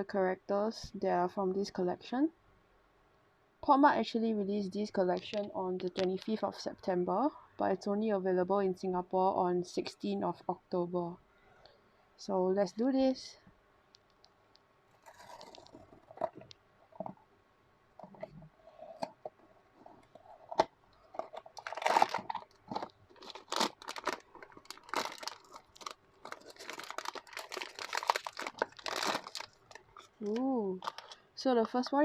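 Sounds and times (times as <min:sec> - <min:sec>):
wrapper crinkling and tearing: 0:15.0 - 0:16.5, 0:20.1 - 0:31.2.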